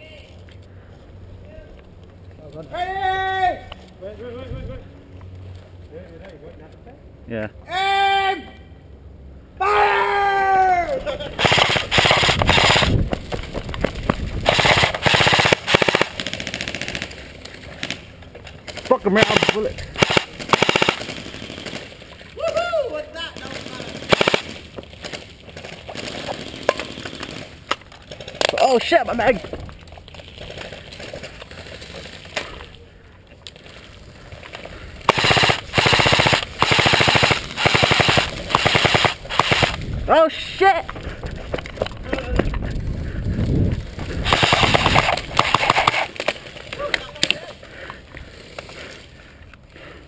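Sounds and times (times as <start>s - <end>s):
low background noise: 0.0s - 50.0s
airsoft rifles firing bursts: 11.4s - 13.0s, 14.4s - 22.1s, 23.4s - 28.4s, 35.1s - 39.8s, 44.2s - 46.4s.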